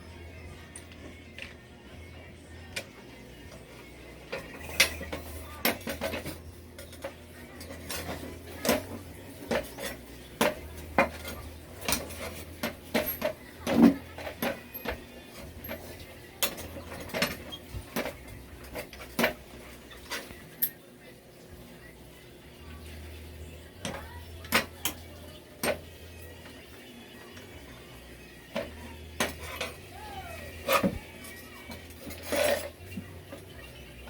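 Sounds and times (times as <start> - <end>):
metal tools clinking: 4.3 - 20.8, 30.6 - 33.4.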